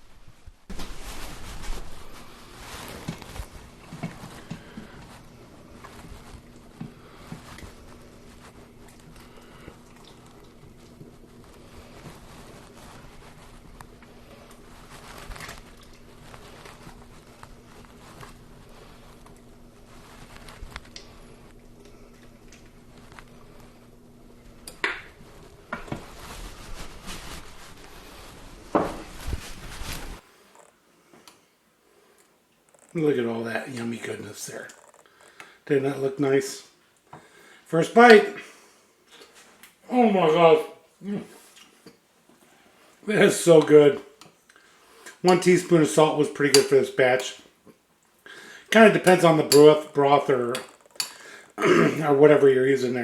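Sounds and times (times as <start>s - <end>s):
faint steady hum: 0.0s - 53.0s
utensil scraping pot: 45.0s - 47.4s, 48.7s - 51.5s
utensil clanking against metal pot: 46.6s - 46.8s.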